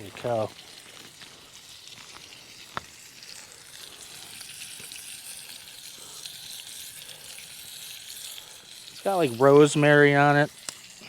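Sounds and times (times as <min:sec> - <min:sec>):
meat sizzling in a pan: 0:00.0 - 0:11.0.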